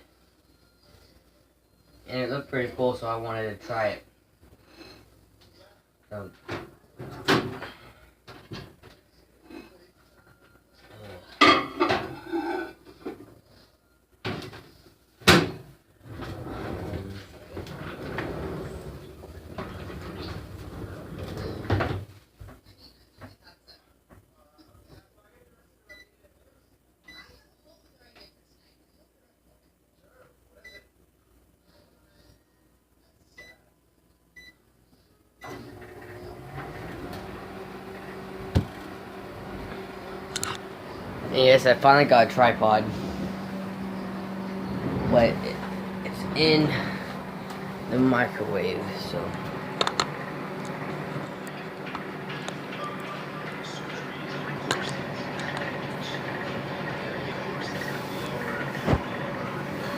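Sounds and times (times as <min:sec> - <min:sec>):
microwave humming: 0:15.3 - 0:22.0, 0:35.4 - 0:59.9.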